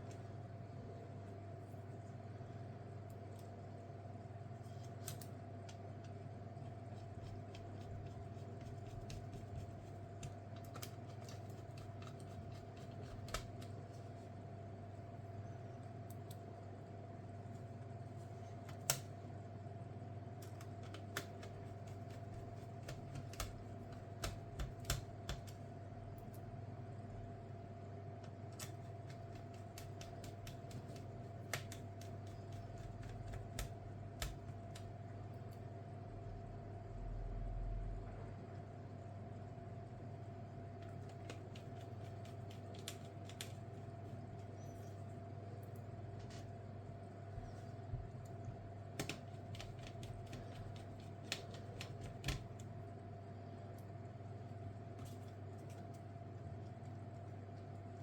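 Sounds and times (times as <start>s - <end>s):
steady low hum: 0.0s - 58.0s
light clicks of small tools: 4.6s - 6.2s, 16.0s - 16.5s.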